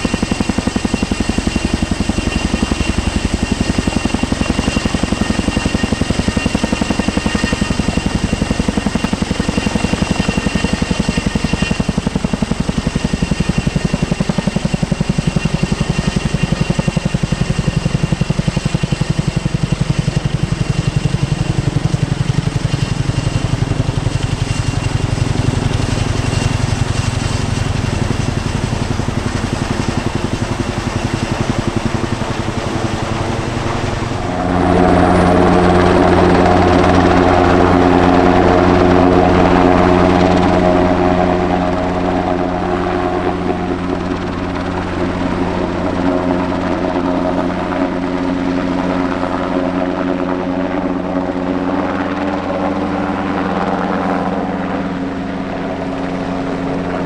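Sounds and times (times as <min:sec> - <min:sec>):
helicopter rotor chop: 0:00.0 - 0:57.0.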